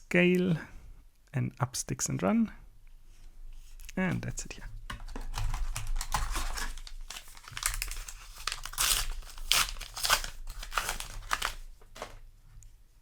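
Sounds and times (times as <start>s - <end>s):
foil wrapper crinkling and tearing: 5.1s - 12.2s.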